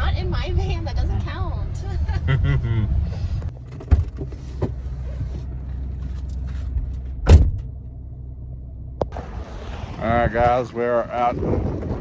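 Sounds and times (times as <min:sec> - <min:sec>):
engine and road rumble: 0:00.0 - 0:10.9
light rattles: 0:03.5 - 0:07.7
sharp loud thump: 0:07.3 - 0:07.7.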